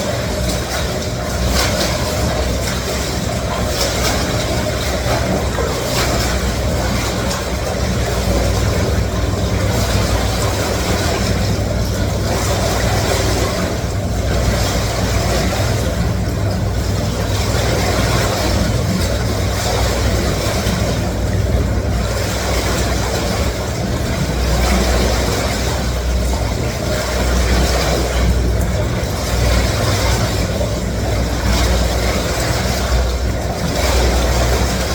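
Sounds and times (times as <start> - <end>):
churning water rushing: 0.0 - 34.9
pump hum: 0.0 - 34.9.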